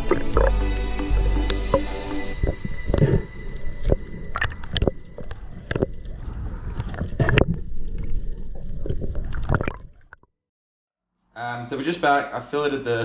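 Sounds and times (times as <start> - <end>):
low rumble: 0.0 - 9.4
water sloshing and gurgling: 0.0 - 10.3.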